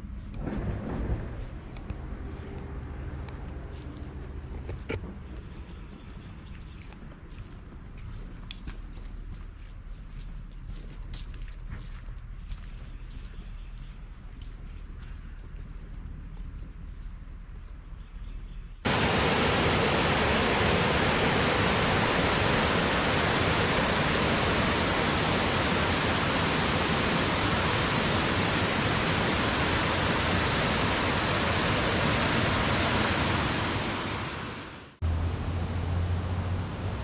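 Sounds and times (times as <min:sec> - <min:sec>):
creek water rushing: 0:18.9 - 0:35.0.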